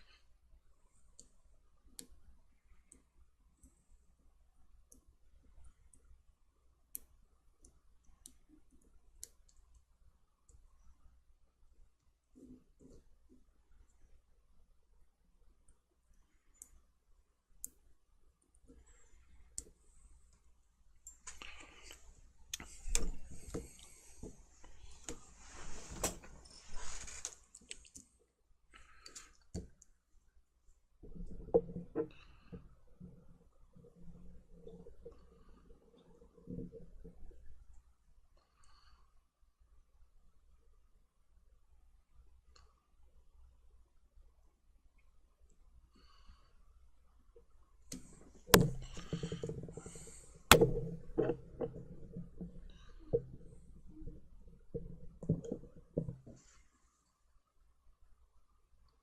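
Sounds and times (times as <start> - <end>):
soft hiss: 0.0 - 31.0.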